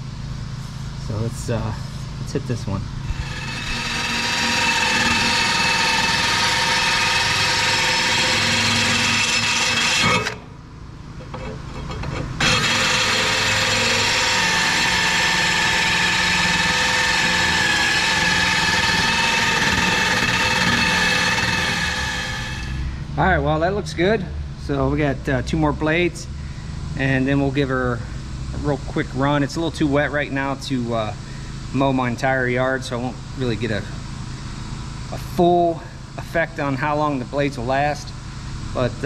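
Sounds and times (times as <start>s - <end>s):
grinding whine of stone on steel: 3.0s - 10.6s, 11.2s - 23.0s.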